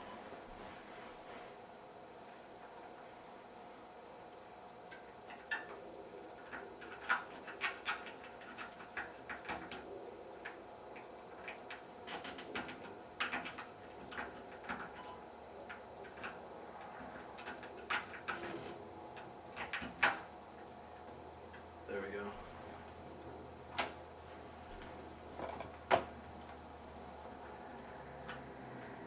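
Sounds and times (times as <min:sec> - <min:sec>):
lock pick clicking and scraping: 0:06.4 - 0:09.8.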